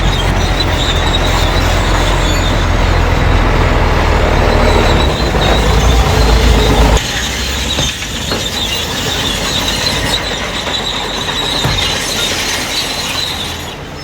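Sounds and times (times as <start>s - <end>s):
diesel engine rumble: 0.0s - 14.0s
metallic squeal and clatter: 0.0s - 14.0s.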